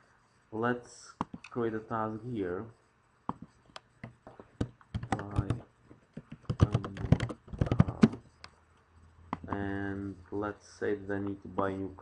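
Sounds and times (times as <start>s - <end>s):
keyboard typing: 3.3s - 8.6s.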